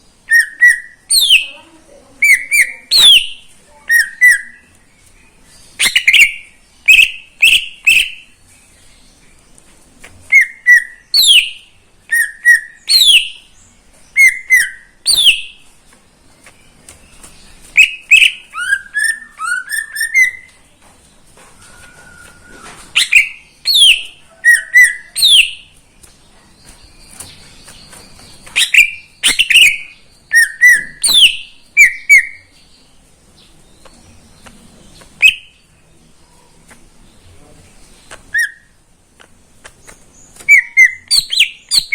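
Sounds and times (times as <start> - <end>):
bird whistling song: 0.2 - 1.6, 2.2 - 4.7, 5.6 - 8.4, 10.3 - 15.7, 17.2 - 20.6, 21.5 - 25.8, 26.6 - 32.7, 33.8 - 35.7, 38.1 - 38.8, 39.8 - 41.9.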